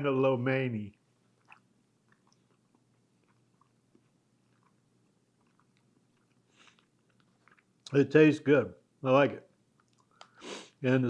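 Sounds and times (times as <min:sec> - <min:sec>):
person chewing noodles: 0:00.9 - 0:07.9, 0:09.6 - 0:10.8.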